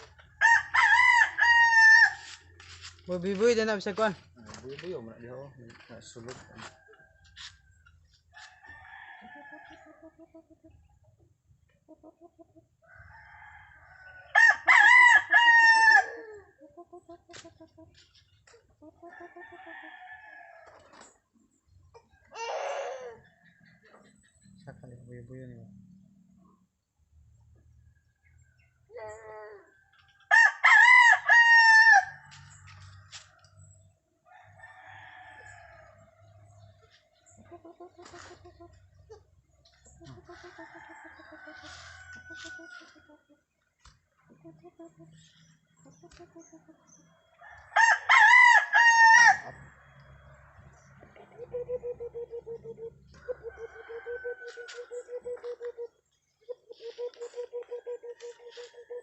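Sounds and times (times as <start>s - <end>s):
rooster crowing: 0.0s - 2.4s, 12.9s - 16.3s, 30.3s - 32.2s, 34.3s - 36.0s, 47.4s - 49.6s, 53.2s - 55.0s.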